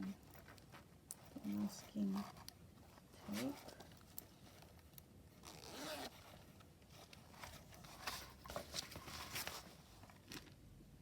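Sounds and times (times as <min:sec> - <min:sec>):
stationery items rustling and clicking: 0:00.0 - 0:10.7.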